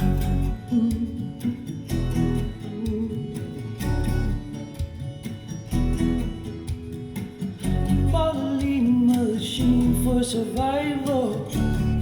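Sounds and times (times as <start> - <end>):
person singing: 0.0 - 4.5, 8.0 - 12.0
strummed acoustic guitar: 0.0 - 12.0.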